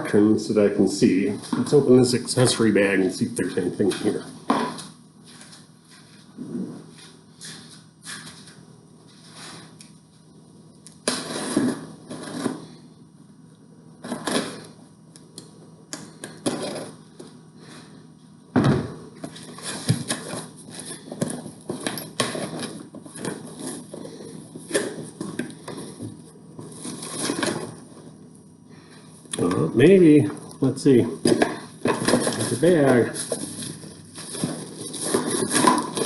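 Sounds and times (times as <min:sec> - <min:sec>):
plastic packaging rustling: 0:19.3 - 0:28.1, 0:31.7 - 0:36.0.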